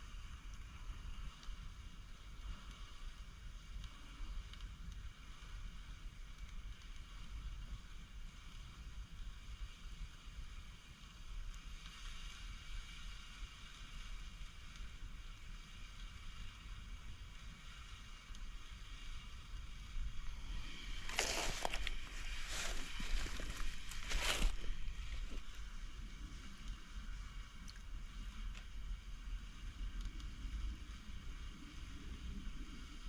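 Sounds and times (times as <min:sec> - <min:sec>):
water: 0:00.0 - 0:33.0
loud rustling bursts: 0:20.3 - 0:25.6.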